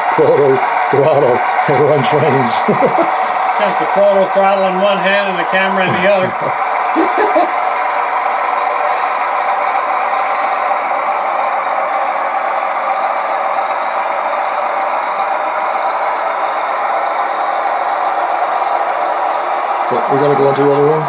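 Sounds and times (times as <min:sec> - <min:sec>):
diesel engine drone through speaker: 0:00.0 - 0:21.0.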